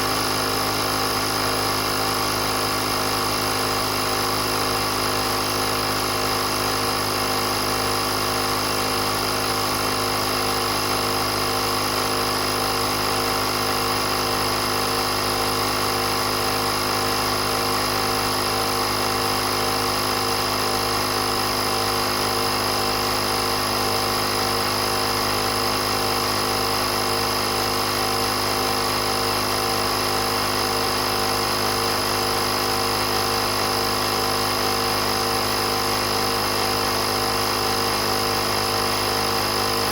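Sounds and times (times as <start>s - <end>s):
air compressor humming: 0.0s - 39.9s.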